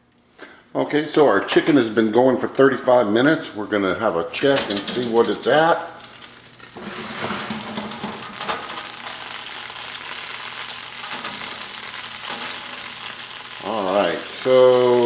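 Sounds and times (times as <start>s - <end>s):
chicken sizzling in oven: 4.4s - 15.0s.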